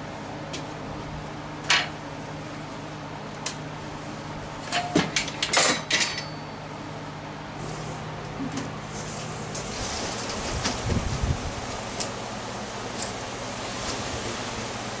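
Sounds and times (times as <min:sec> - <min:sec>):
steady low hum: 0:10.5 - 0:15.0.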